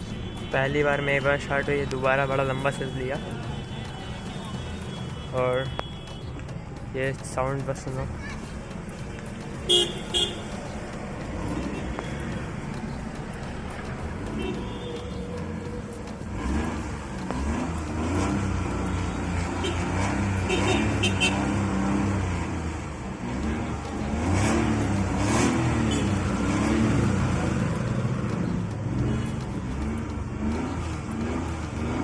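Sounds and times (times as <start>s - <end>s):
car engine revving: 8.8s - 32.0s.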